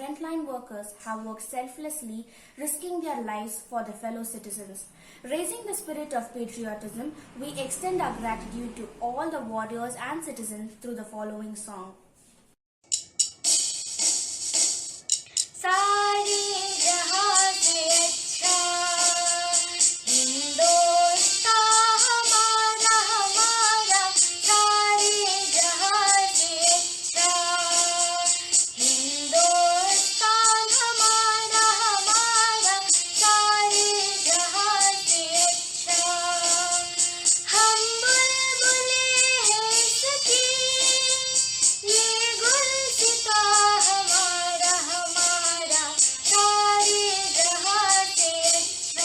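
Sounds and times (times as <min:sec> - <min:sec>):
instrumental backing with beat: 0:12.8 - 0:49.0
young woman singing: 0:15.6 - 0:49.0.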